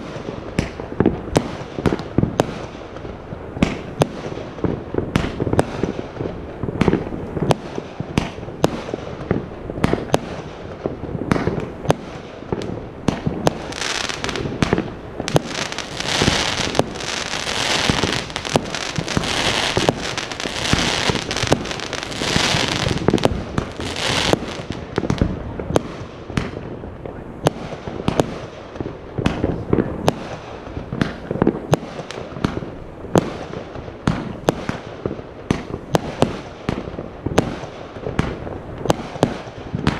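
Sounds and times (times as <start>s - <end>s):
thick steady hiss: 0.0s - 26.3s
fireworks bursting bangs: 0.0s - 39.9s.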